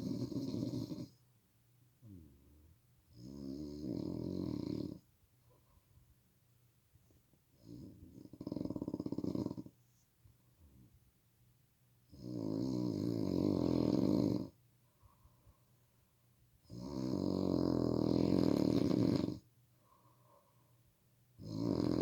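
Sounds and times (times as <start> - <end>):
person snoring loudly: 3.2 - 5.0, 12.2 - 14.5, 16.7 - 19.4, 21.4 - 22.0.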